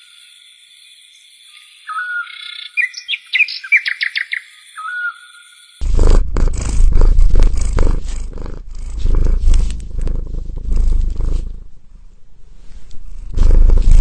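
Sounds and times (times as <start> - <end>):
cat purring: 5.8 - 14.0.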